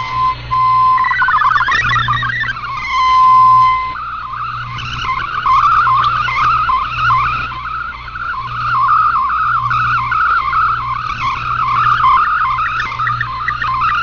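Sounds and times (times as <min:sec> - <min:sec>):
low hum: 0:00.0 - 0:14.0
warbling digital data tones: 0:00.0 - 0:14.0.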